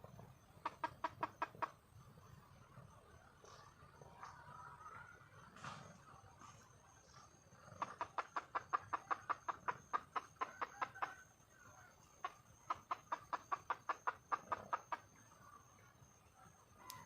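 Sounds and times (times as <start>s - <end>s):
hen clucking rapidly: 0.0s - 1.9s, 7.3s - 15.4s.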